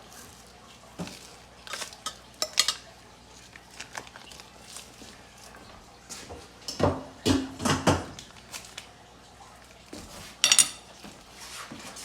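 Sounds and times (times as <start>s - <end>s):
dishes and cutlery clattering: 1.0s - 2.9s, 6.7s - 8.2s, 10.4s - 11.0s
metal clinking on a plate: 1.7s - 2.8s, 10.4s - 10.8s.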